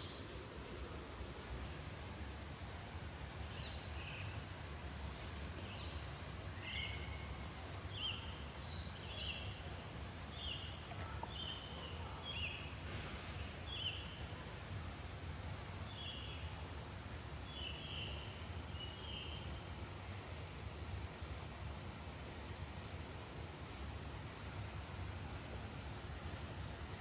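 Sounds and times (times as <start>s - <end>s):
steady low hum: 0.0s - 27.0s
bird chirping: 3.4s - 4.5s, 5.2s - 14.3s, 17.5s - 19.6s.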